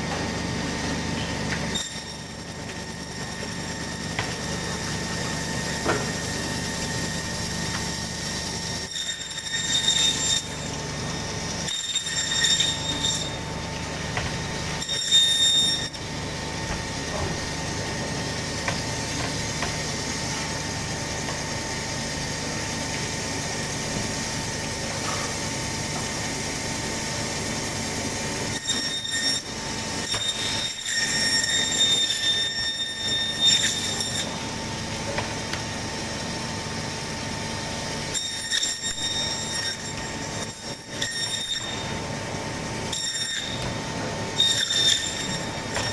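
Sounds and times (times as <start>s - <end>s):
bandsaw humming: 1.4s - 45.9s
saw blade cutting bone: 7.2s - 10.8s, 11.6s - 13.4s, 14.8s - 16.0s, 28.5s - 34.4s, 38.2s - 42.0s, 42.9s - 45.9s.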